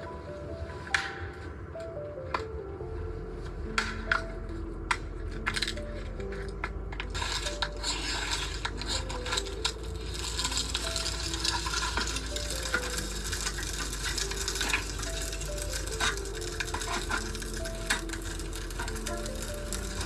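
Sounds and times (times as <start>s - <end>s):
utensil scraping a pan: 5.3s - 20.0s
steak sizzling in a pan: 10.0s - 20.0s.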